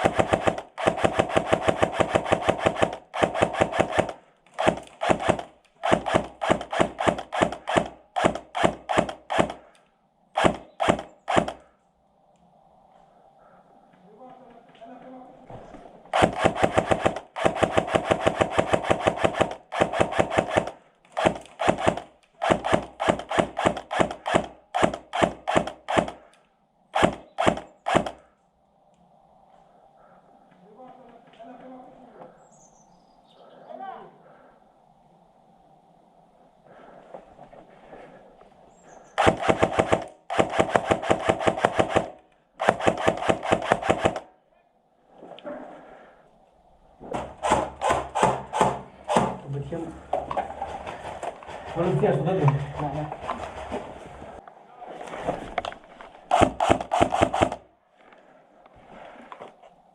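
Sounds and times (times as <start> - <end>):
airsoft rifle firing: 0.0 - 9.7, 10.4 - 11.6, 16.1 - 26.3, 26.9 - 28.2, 39.2 - 44.3, 47.2 - 49.5, 56.3 - 57.6.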